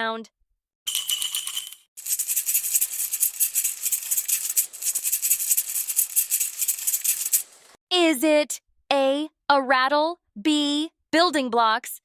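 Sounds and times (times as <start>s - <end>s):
baby rattle shaken: 0.9s - 7.6s.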